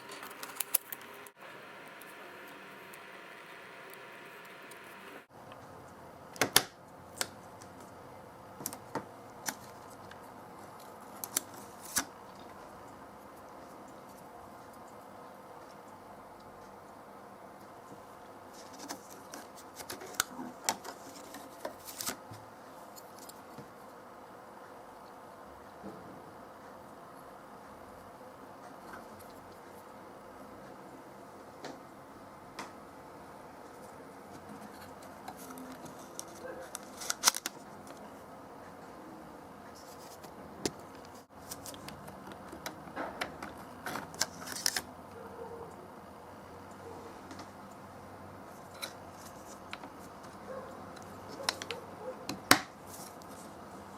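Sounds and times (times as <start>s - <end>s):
hands handling computer parts: 0.0s - 4.8s
faint steady hum: 0.0s - 53.9s.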